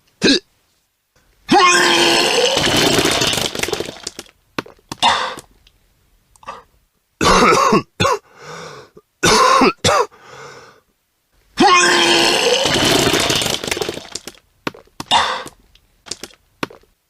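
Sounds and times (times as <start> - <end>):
person retching and gagging: 0.2 - 0.5, 1.5 - 5.5, 11.6 - 15.6
person gasping: 8.2 - 9.0, 10.1 - 10.8.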